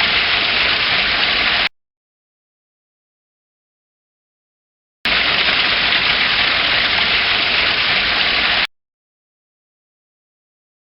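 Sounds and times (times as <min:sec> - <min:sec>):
waterfall rushing: 0:00.0 - 0:01.7, 0:05.1 - 0:08.7.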